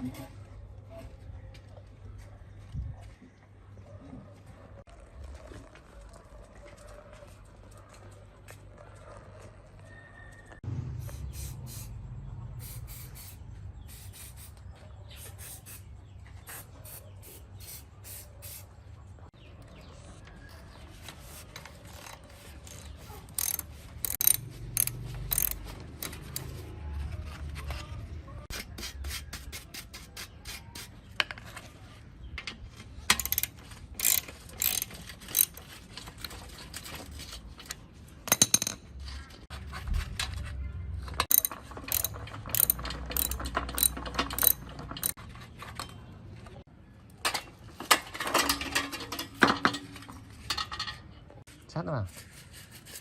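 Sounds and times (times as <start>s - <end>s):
rubbing and scraping: 19.9s - 38.2s, 38.8s - 46.7s, 52.0s - 53.0s
bicycle parts ratcheting clicks: 21.6s - 26.6s, 33.1s - 36.8s, 41.2s - 45.2s.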